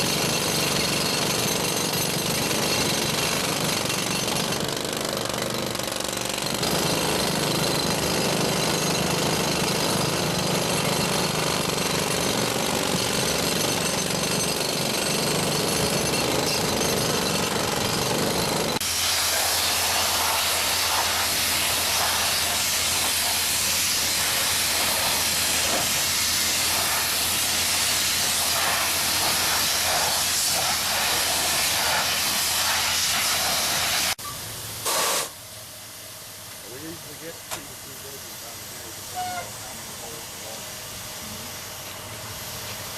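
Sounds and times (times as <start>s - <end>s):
jackhammer breaking concrete: 0.0s - 32.6s.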